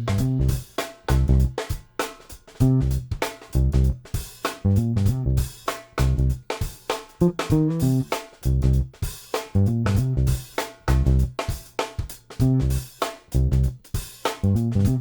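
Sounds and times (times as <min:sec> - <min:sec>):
electric bass guitar groove: 0:00.0 - 0:01.5, 0:02.6 - 0:04.0, 0:04.7 - 0:06.4, 0:07.2 - 0:08.9, 0:09.6 - 0:11.3, 0:12.4 - 0:12.8, 0:13.4 - 0:13.7, 0:14.4 - 0:15.0
drum beat: 0:00.0 - 0:13.2, 0:13.8 - 0:15.0.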